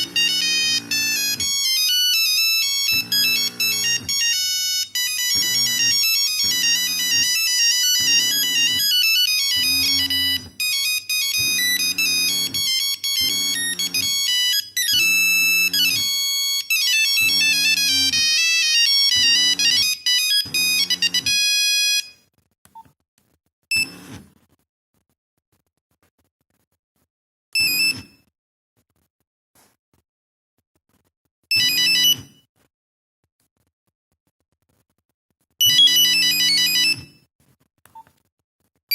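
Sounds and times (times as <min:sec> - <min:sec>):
phone beeping ringtone melody: 0:00.0 - 0:22.2, 0:27.6 - 0:28.2, 0:31.5 - 0:32.4, 0:35.6 - 0:37.2.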